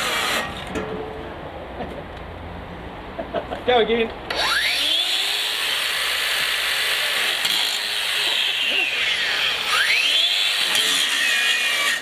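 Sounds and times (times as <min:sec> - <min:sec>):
angle grinder grinding: 0:04.3 - 0:12.0.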